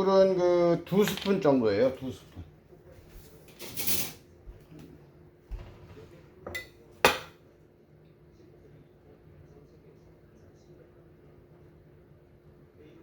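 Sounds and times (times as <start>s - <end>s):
spoon clinking on dishes: 6.5s - 7.3s.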